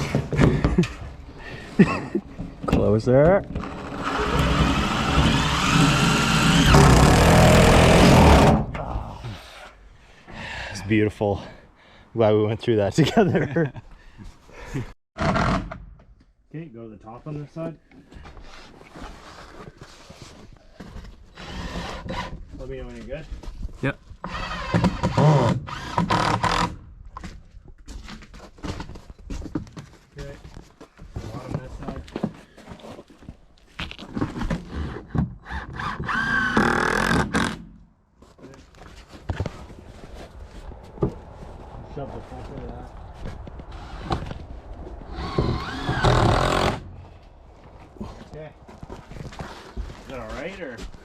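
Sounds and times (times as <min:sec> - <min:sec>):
power drill driving fastener: 0:03.6 - 0:08.6, 0:24.2 - 0:26.8, 0:35.4 - 0:37.6, 0:45.1 - 0:46.9.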